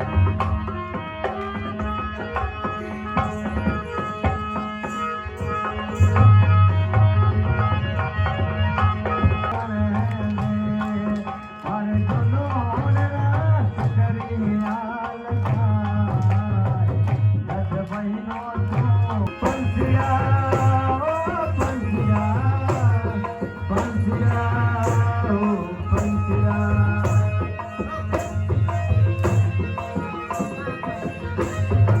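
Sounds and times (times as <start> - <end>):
hand drum beat: 18.5 - 32.0.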